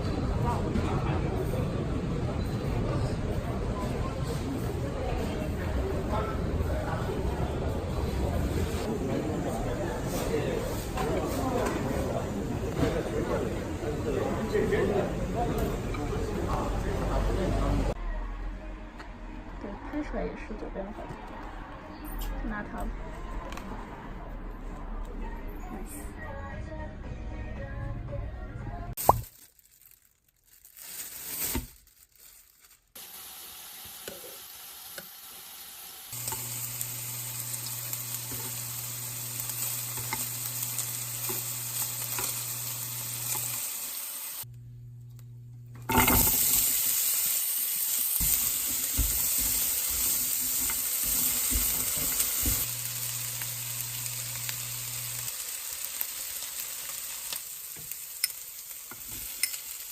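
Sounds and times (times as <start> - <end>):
food sizzling in a pan: 33.0 - 44.5, 45.9 - 59.9.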